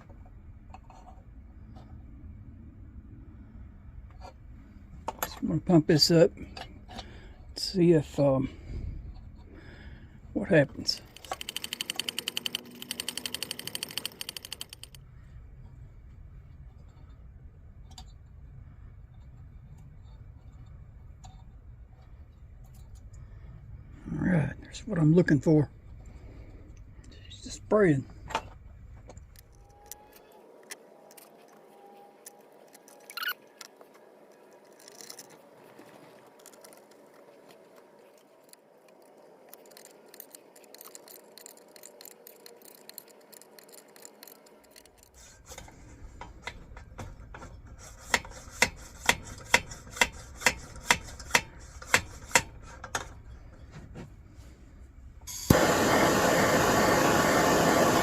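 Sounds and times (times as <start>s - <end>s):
lantern pump clicking: 45.5s - 53.2s
pressure hissing from tank: 55.3s - 58.0s.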